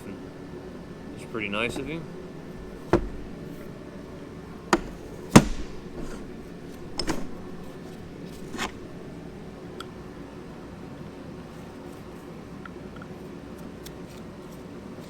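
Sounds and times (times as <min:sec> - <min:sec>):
engine parts knocking and clanking: 0:01.3 - 0:04.0, 0:04.6 - 0:09.1.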